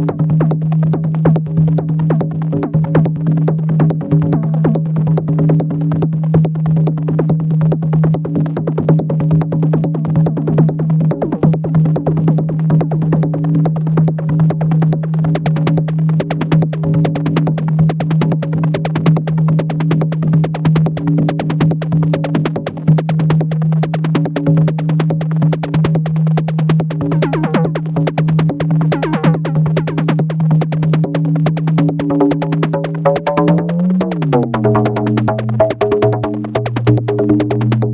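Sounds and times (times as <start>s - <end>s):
fast dense electronic clicks: 15.3s - 37.9s
low synthesizer drone: 27.0s - 37.9s
warbling pitch sweeps: 33.2s - 37.9s.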